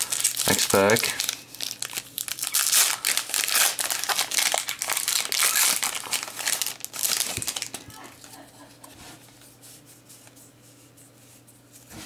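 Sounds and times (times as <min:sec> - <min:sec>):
foil wrapper crinkling and tearing: 0:00.0 - 0:08.2.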